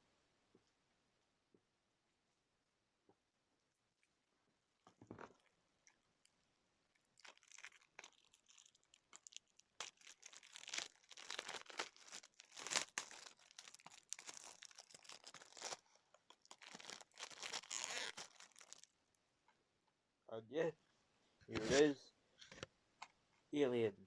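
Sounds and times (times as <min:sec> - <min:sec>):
plastic packaging crinkling and tearing: 0:07.1 - 0:18.9.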